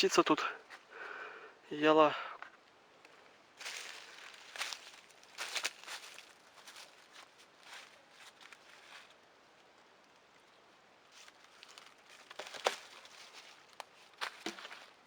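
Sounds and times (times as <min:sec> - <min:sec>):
crunching steps on forest floor: 0:03.0 - 0:09.2, 0:11.1 - 0:15.0
rustling: 0:03.2 - 0:09.2, 0:11.1 - 0:15.0.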